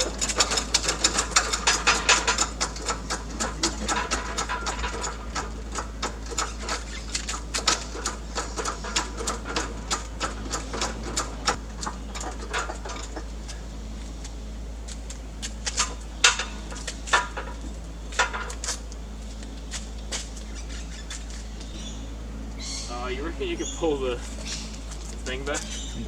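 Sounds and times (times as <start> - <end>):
chain hoist clicking: 0.0 - 13.2.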